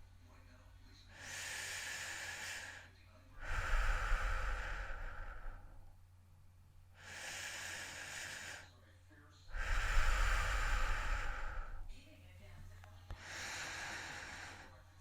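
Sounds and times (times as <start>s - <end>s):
person breathing heavily: 1.1s - 5.9s, 7.0s - 8.8s, 9.5s - 12.0s, 13.1s - 15.0s
air rumble on microphone: 9.5s - 12.0s.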